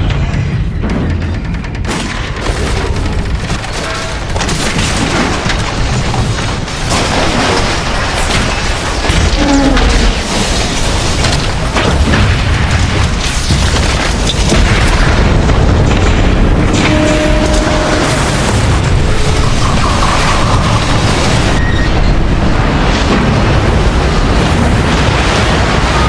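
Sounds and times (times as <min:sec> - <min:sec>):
deep rumble with cracks and booms: 0:00.0 - 0:26.0
metal groan: 0:09.1 - 0:11.0, 0:16.2 - 0:20.8.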